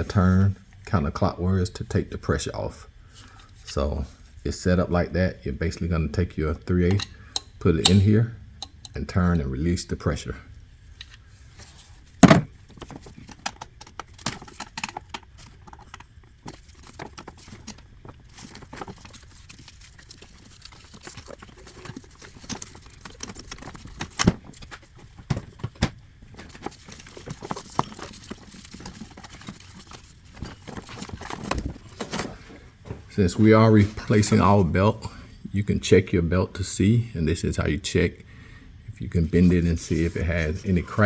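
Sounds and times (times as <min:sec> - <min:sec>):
metal parts knocking: 0:06.9 - 0:09.0.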